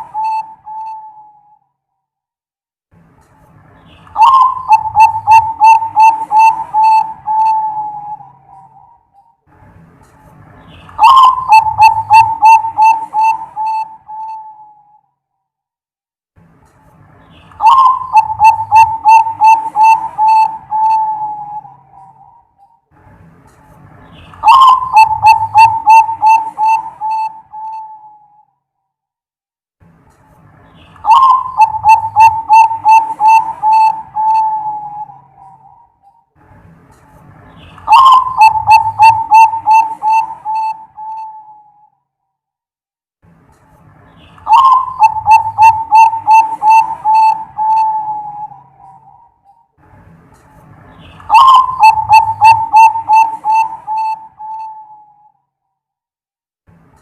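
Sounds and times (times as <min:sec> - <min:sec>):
dove cooing: 0:00.0 - 0:01.5, 0:04.2 - 0:09.0, 0:11.0 - 0:14.8, 0:17.6 - 0:22.4, 0:24.4 - 0:28.3, 0:31.0 - 0:35.8, 0:37.9 - 0:41.8, 0:44.5 - 0:49.3, 0:51.3 - 0:55.2.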